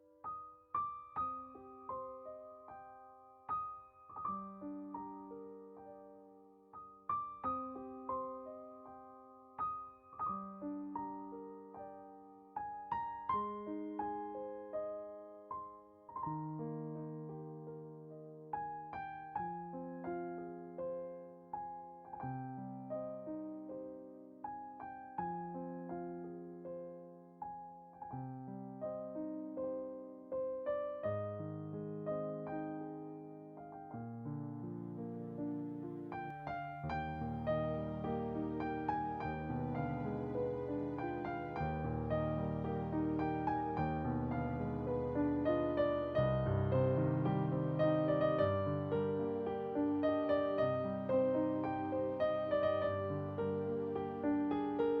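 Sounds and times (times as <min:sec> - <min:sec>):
gentle solo piano: 0:00.0 - 0:55.0.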